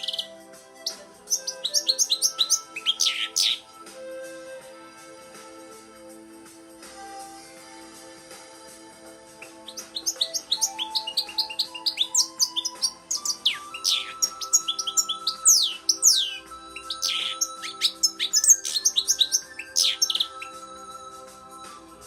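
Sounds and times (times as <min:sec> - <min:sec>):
finch twittering: 0:00.0 - 0:03.9, 0:09.4 - 0:21.3
background music: 0:00.0 - 0:22.0.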